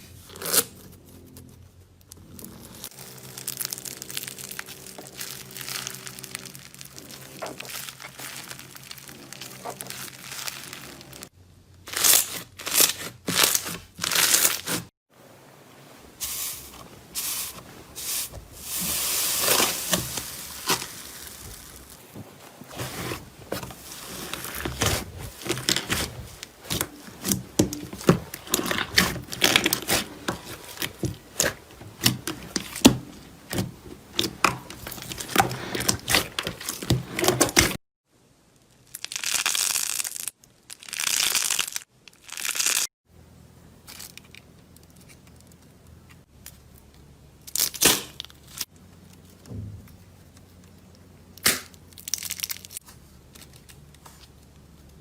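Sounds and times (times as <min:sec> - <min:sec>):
slime crackling and popping: 0:02.6 - 0:11.3, 0:38.9 - 0:42.9
slime hissing tearing: 0:03.0 - 0:11.0, 0:16.2 - 0:22.0.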